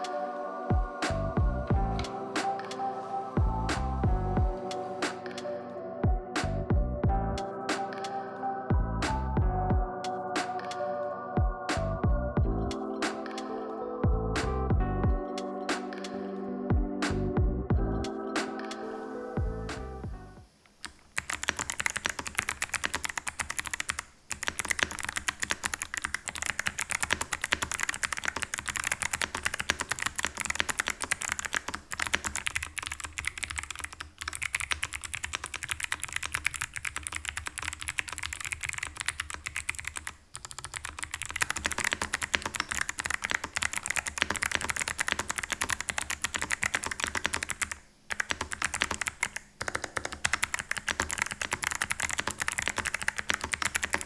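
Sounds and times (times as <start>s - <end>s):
mechanical keyboard typing: 20.8s - 54.0s.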